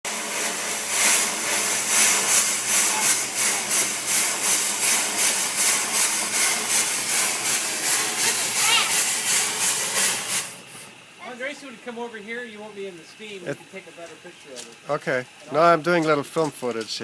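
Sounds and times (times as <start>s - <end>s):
steam engine exhaust chuffing: 0.1s - 11.1s.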